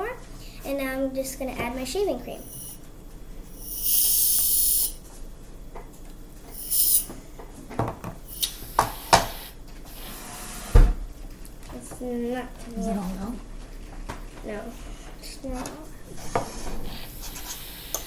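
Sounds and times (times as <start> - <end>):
aerosol can spraying foam: 2.4 - 2.8, 3.6 - 5.0, 6.6 - 7.1, 8.3 - 10.2, 16.9 - 18.0.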